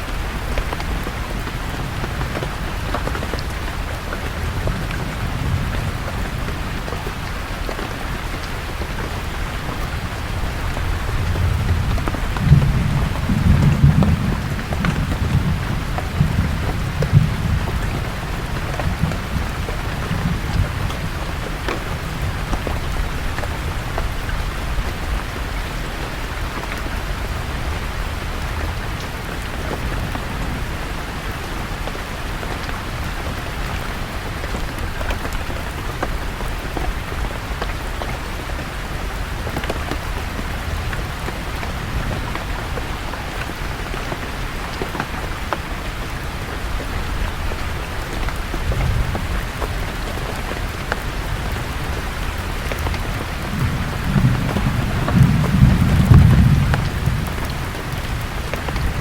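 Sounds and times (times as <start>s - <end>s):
rain falling on leaves: 0.0s - 59.0s
thunder rolling: 10.8s - 21.6s, 52.9s - 59.0s.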